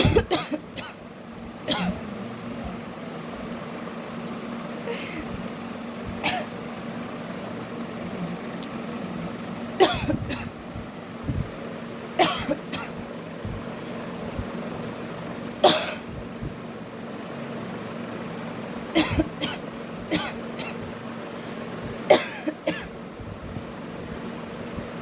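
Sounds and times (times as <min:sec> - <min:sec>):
woman coughing: 0:00.0 - 0:01.0, 0:01.7 - 0:02.1, 0:04.9 - 0:05.3, 0:06.2 - 0:06.5, 0:09.8 - 0:10.6, 0:12.2 - 0:13.0, 0:15.6 - 0:16.1, 0:19.0 - 0:20.8, 0:22.1 - 0:22.9.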